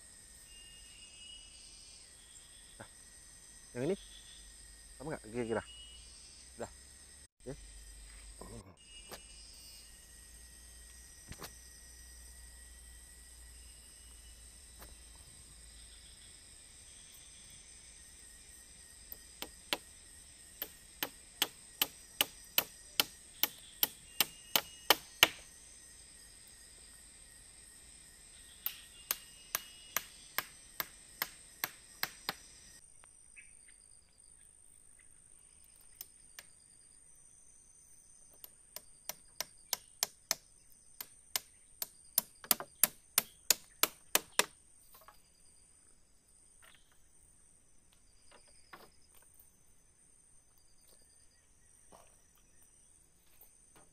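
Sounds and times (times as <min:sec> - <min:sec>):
forest insects droning: 0:00.0 - 0:53.9
tool knocking on wood: 0:20.6 - 0:25.4, 0:42.2 - 0:44.5.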